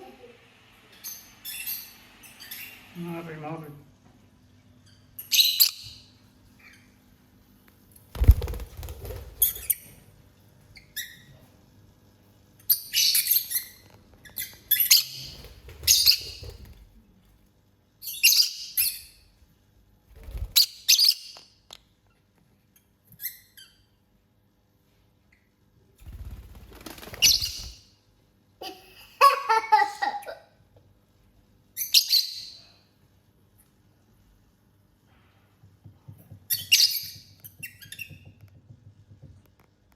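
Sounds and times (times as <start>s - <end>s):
lovebirds chirping: 14.4s - 16.8s, 27.1s - 27.8s.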